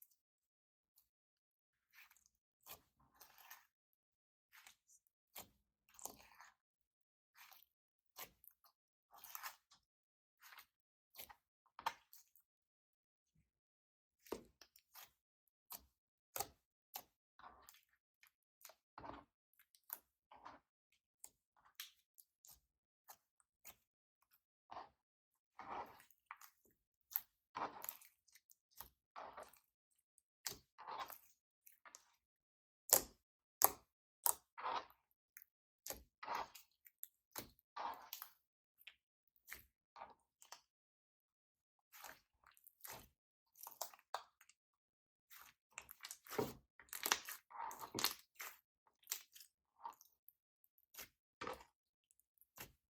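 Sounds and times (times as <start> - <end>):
slime squelching: 2.0 - 3.7, 9.1 - 9.6, 25.6 - 29.7, 30.4 - 32.1, 32.9 - 35.0, 35.8 - 36.8, 37.4 - 40.6, 41.9 - 44.5, 45.4 - 50.2, 50.9 - 51.7
slime sticky clicks and squishes: 45.4 - 50.0.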